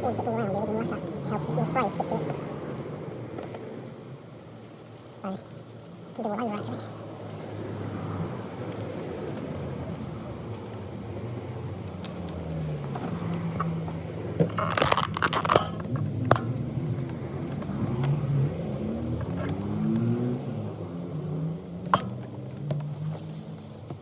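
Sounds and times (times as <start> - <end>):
sandpaper scraping car paint: 0.0 - 2.5, 3.4 - 24.0
vehicle engine humming: 0.0 - 24.0
sharp clicks and knocks: 21.8 - 23.2.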